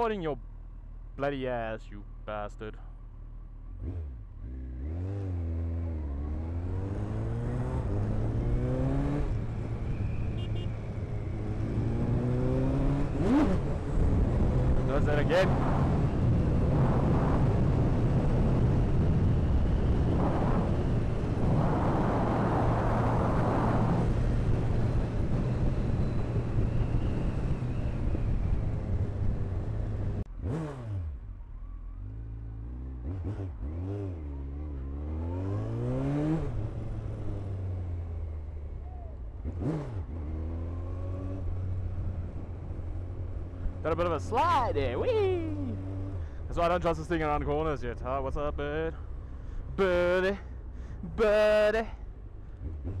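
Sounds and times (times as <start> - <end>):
motorcycle engine revving: 3.2 - 47.7
heavy wind noise: 12.8 - 30.3.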